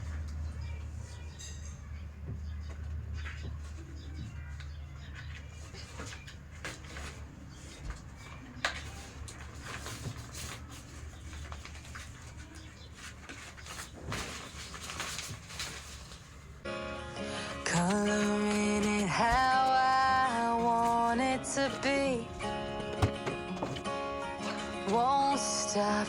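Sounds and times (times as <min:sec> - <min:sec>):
parts clicking and knocking: 0:22.4 - 0:24.0.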